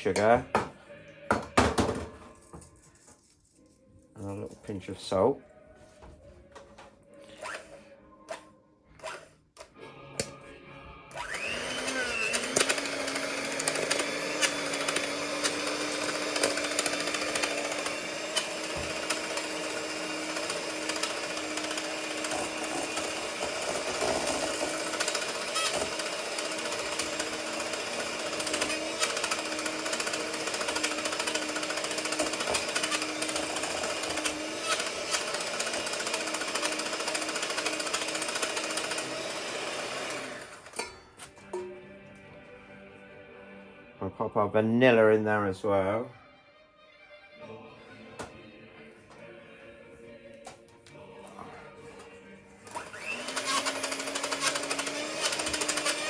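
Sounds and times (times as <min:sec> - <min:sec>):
electric mixer motor whining: 0:11.1 - 0:40.9, 0:52.6 - 0:56.0.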